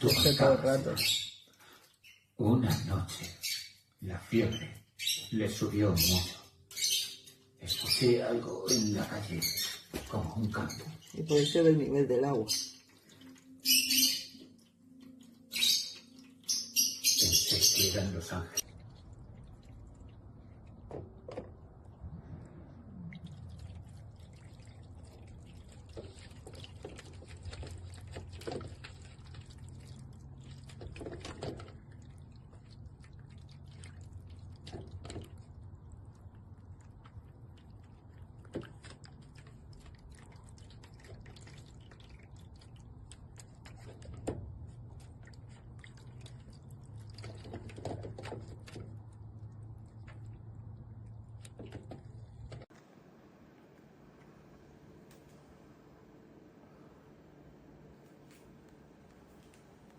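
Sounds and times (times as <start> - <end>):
water trickling and dripping: 3.8 - 52.7
small pump humming: 18.8 - 59.9.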